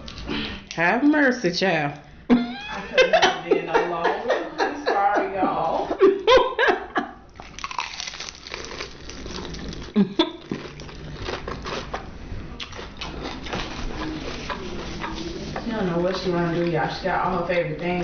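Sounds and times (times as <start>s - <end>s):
chewing crunchy fried food: 7.3s - 15.2s.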